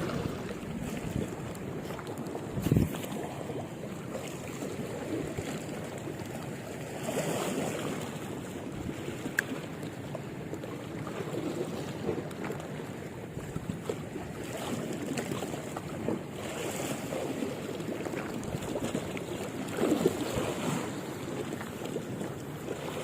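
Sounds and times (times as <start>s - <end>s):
wind buffeting microphone: 0.0s - 3.6s
small waves lapping: 0.0s - 23.0s.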